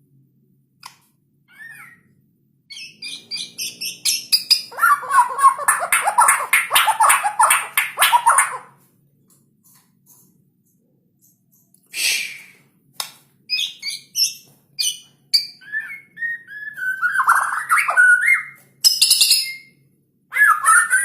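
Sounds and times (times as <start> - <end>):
songbird singing: 2.7 - 8.6.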